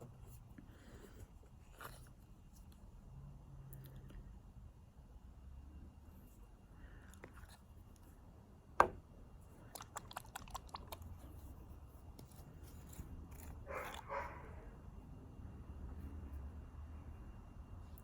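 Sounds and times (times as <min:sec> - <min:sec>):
dog barking: 0:13.7 - 0:14.6.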